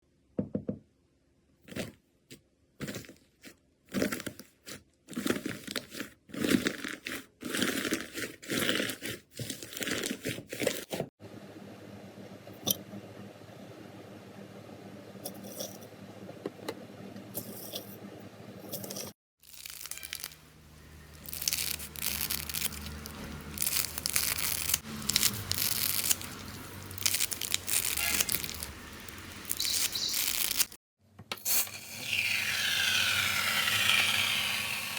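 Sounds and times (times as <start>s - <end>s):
slime crackling and squishing: 3.9s - 10.9s, 19.4s - 30.8s.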